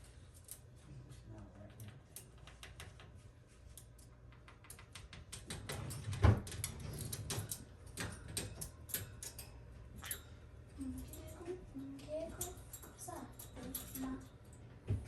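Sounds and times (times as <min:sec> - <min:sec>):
quick irregular clicks and taps: 0:01.6 - 0:05.9.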